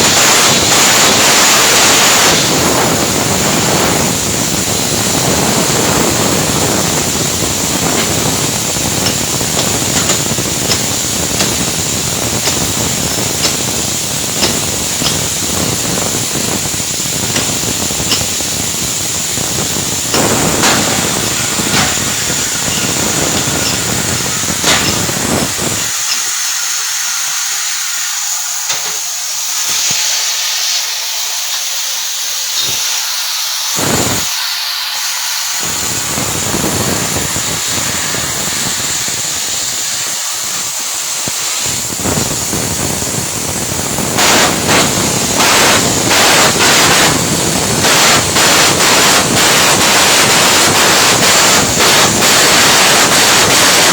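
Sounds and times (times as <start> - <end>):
welding arc hissing and crackling: 0.0 - 53.9
sharp pops: 6.7 - 26.3.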